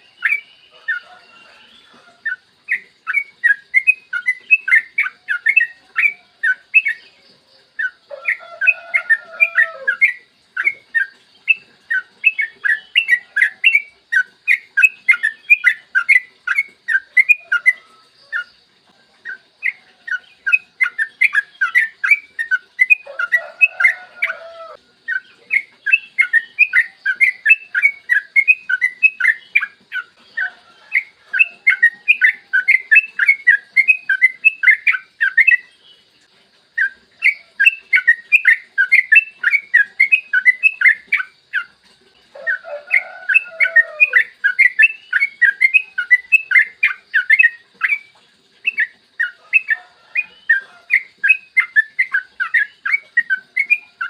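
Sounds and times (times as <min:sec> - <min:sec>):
lower warbling bird call: 0:00.0 - 0:35.7, 0:36.8 - 0:54.0
bird singing rapid runs of notes: 0:00.0 - 0:54.0.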